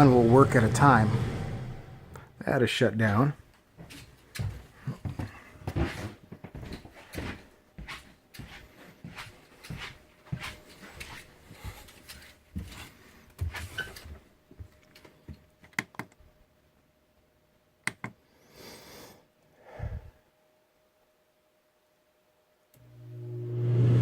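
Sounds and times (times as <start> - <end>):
rustling and scuffing handling noise: 3.1 - 15.3
faint steady hum: 14.2 - 24.0.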